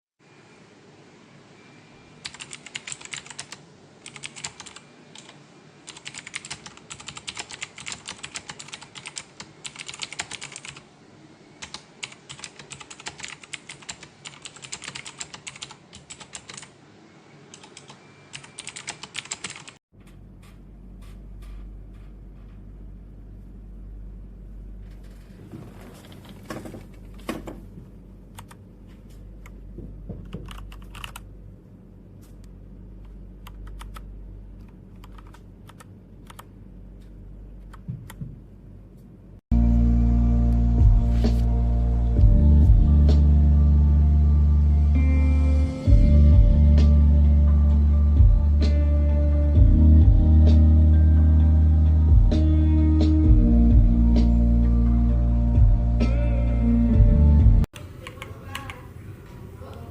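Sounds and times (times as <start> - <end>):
steady low hum: 19.9 - 59.9.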